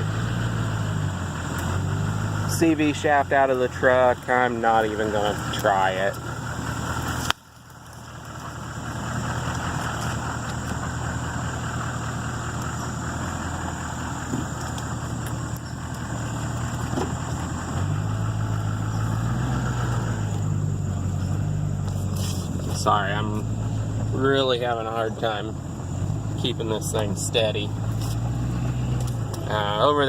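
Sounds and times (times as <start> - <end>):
truck engine humming: 0.0 - 30.0
rattling and rustling: 4.9 - 24.2, 27.7 - 29.5.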